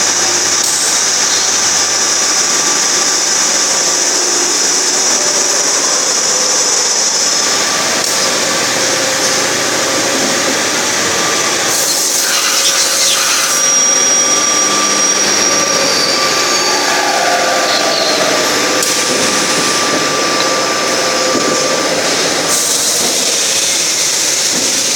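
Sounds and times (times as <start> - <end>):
machine whining tones: 0.1 - 24.9
machine hiss: 11.6 - 20.2, 20.8 - 24.9.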